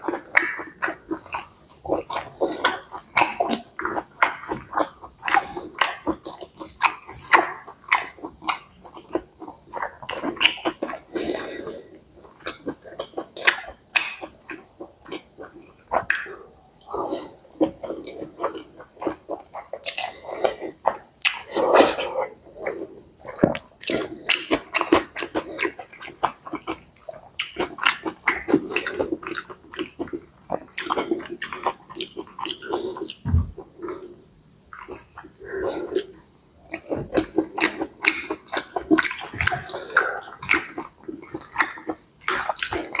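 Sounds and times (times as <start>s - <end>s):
wet chewing mouth clicks: 20.9s - 43.0s.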